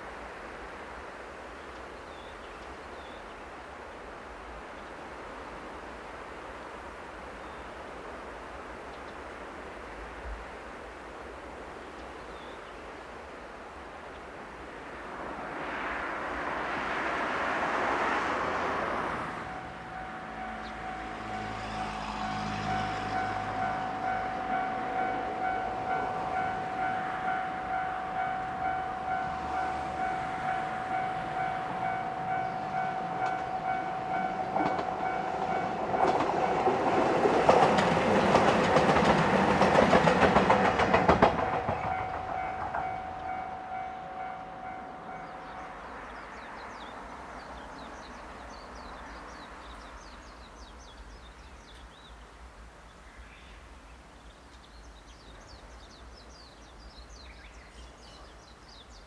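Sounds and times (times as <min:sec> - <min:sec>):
diesel train passing: 0:03.5 - 0:51.7
wheels clattering over rail joints: 0:18.7 - 0:45.7
level crossing alarm ringing: 0:19.4 - 0:46.0.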